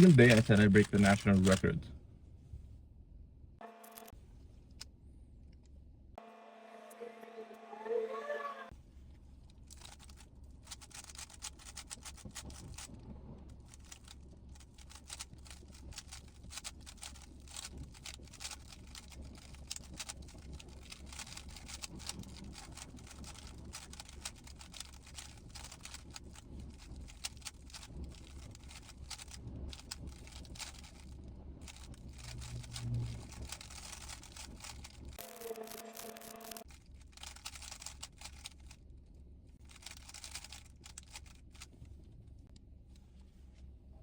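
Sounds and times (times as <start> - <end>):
rapid clicking of puzzle cube turns: 0.0 - 1.7, 9.7 - 38.8, 39.6 - 41.8
steady low hum: 0.0 - 7.7, 8.8 - 44.0.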